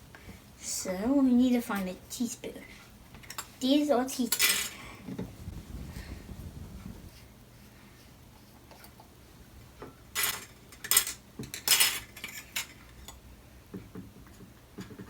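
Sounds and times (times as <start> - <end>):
metal spoons clinking: 4.3 - 4.8.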